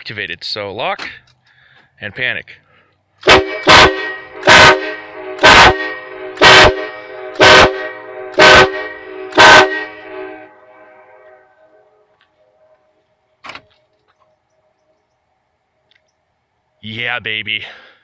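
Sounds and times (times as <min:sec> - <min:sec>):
train horn blasts: 0:03.2 - 0:13.4.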